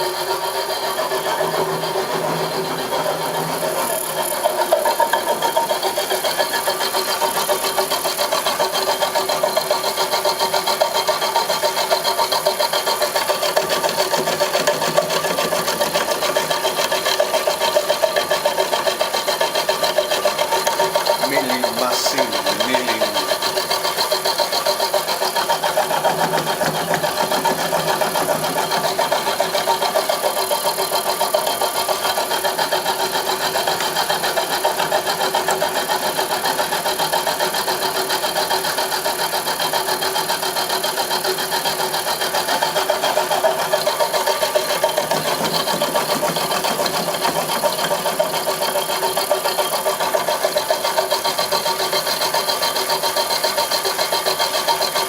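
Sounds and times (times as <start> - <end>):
milling machine buzzing: 19.2 - 29.6.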